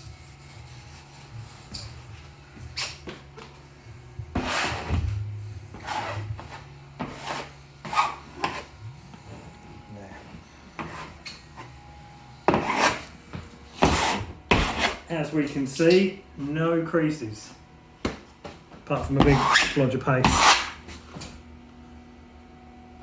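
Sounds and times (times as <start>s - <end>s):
squeegee rasping over wallpaper: 0.0s - 2.1s, 4.4s - 5.1s, 5.7s - 8.7s, 12.5s - 13.1s, 13.7s - 15.1s, 19.2s - 21.0s.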